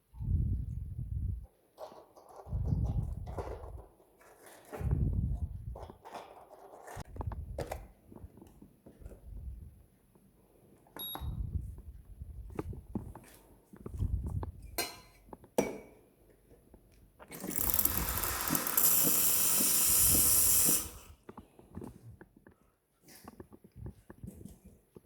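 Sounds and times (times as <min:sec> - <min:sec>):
steam wand hissing: 0:17.4 - 0:21.2.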